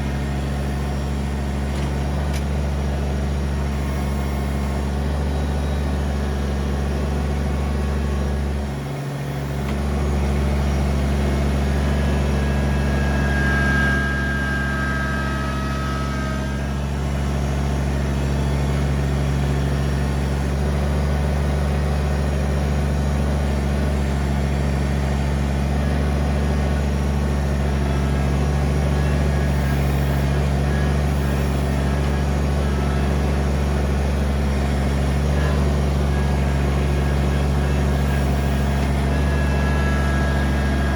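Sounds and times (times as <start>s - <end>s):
tractor diesel engine running: 0.0s - 40.9s
thin high whine: 11.9s - 18.6s.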